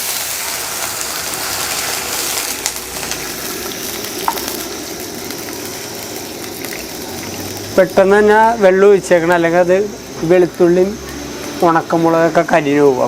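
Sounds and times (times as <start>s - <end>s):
water sizzling in hot oil: 0.0s - 13.0s.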